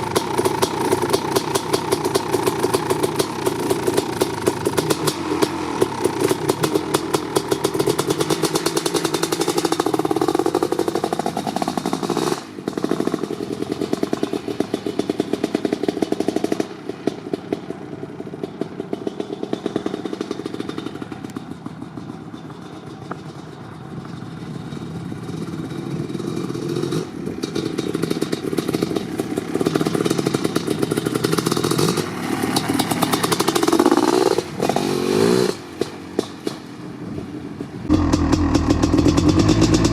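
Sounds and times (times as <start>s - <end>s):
two-stroke motorcycle engine revving: 0.0s - 17.3s, 26.0s - 35.8s, 37.9s - 39.9s.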